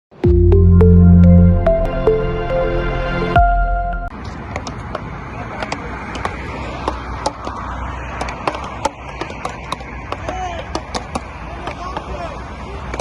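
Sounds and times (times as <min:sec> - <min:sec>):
musical intro: 0:00.1 - 0:04.2
paddles hitting ball: 0:08.2 - 0:12.2.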